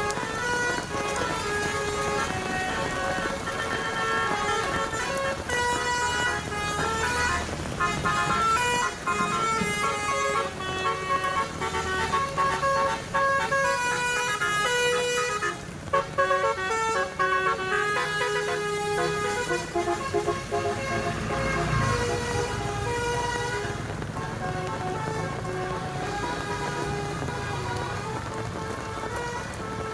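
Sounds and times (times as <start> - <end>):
engine rumble: 0.0 - 29.9
musical bus horn melody: 0.0 - 29.9.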